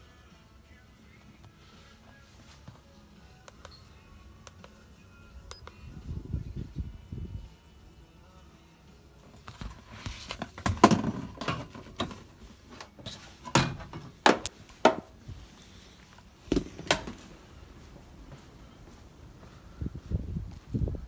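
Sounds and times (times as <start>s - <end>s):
knocks and clunks: 13.4s - 15.1s.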